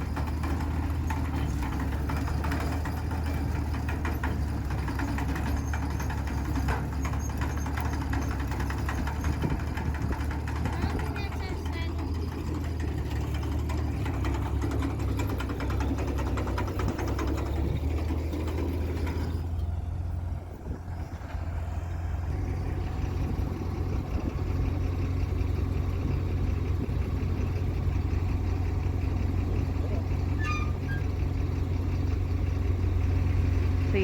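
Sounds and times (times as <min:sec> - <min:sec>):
tractor engine idling: 0:00.0 - 0:34.0.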